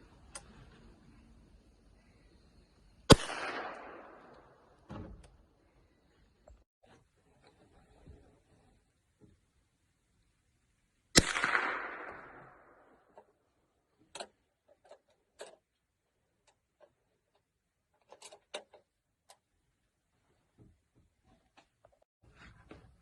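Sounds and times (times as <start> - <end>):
rifle shot: 3.1 - 4.7, 11.2 - 13.1.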